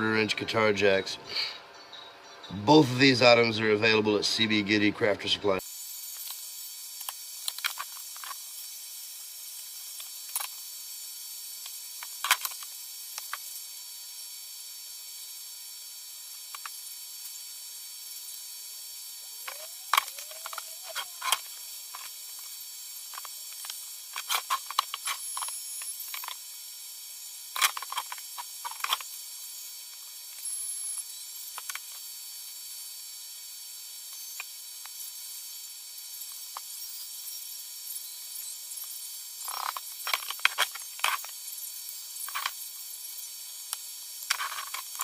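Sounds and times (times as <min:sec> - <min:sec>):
steady hiss: 0:00.0 - 0:45.0
rising squeak: 0:19.3 - 0:21.3.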